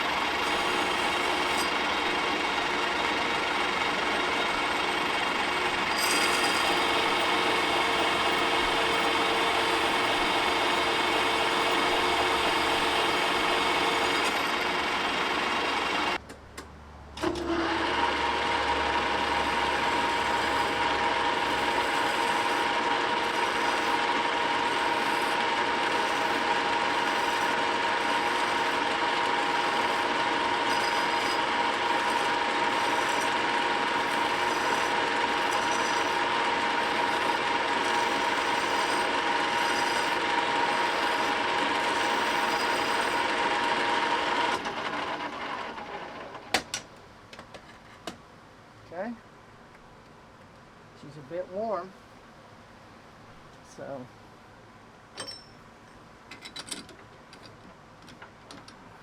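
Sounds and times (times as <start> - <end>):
metal lathe cutting steel: 0.0 - 16.2, 17.2 - 45.9.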